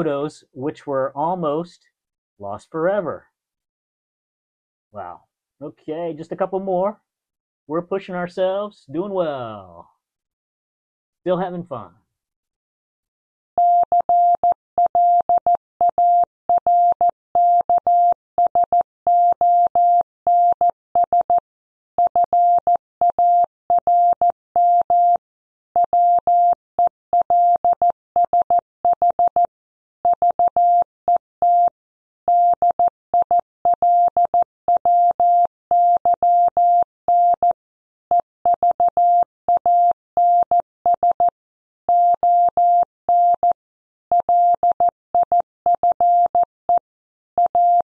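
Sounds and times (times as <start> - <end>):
morse code tone: 41.9 - 46.5, 47.4 - 47.8.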